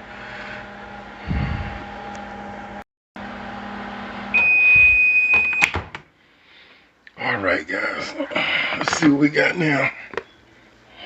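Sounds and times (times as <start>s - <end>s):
microwave oven humming: 0.0s - 6.2s
long high beep: 4.3s - 5.7s.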